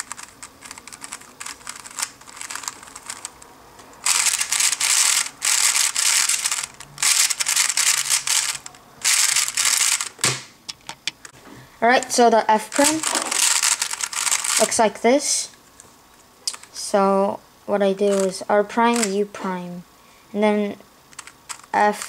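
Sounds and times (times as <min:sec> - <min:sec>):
puzzle cube clicking and clacking: 0:00.0 - 0:11.3, 0:11.9 - 0:14.9, 0:16.5 - 0:16.8, 0:18.0 - 0:19.2, 0:21.1 - 0:22.0.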